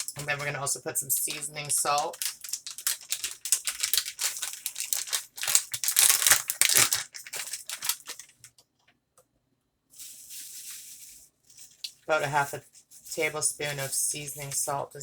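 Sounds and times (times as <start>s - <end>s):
packaging crinkling: 0.0s - 0.6s, 1.2s - 8.6s.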